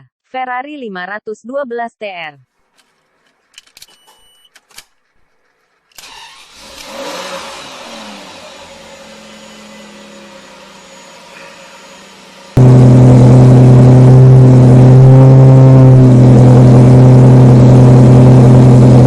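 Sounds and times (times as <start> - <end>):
car engine starting and idling: 5.1 - 19.0.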